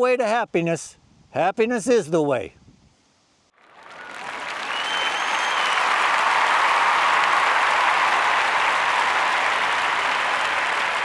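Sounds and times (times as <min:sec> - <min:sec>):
crowd applause: 0:03.6 - 0:11.0
short whistle: 0:03.9 - 0:06.0.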